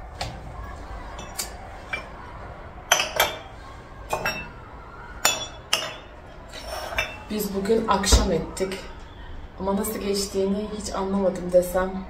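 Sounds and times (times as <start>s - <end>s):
dishes and cutlery clinking: 1.1s - 2.2s, 2.9s - 3.5s, 4.1s - 4.6s, 5.2s - 7.3s.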